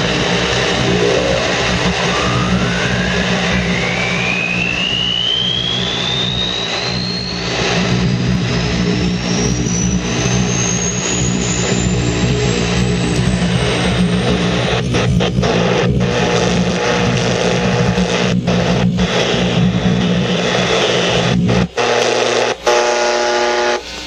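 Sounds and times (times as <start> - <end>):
radio static: 0.0 - 9.0, 13.6 - 24.0
rising whistle tone: 0.0 - 14.7
droning radio signal: 0.0 - 24.0.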